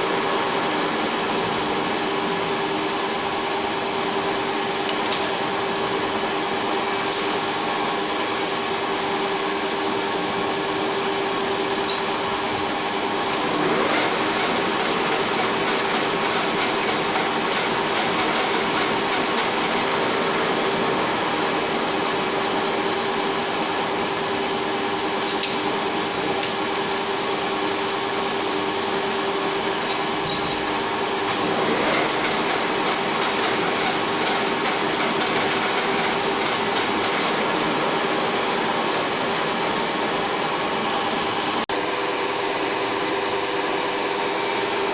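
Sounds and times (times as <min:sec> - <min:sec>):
lathe whirring: 0:00.0 - 0:44.9.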